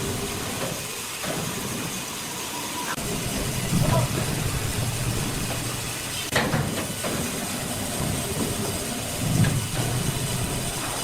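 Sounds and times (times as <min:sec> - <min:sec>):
heavy machinery humming and hissing: 0:00.0 - 0:11.0
low machinery surge: 0:03.0 - 0:06.4.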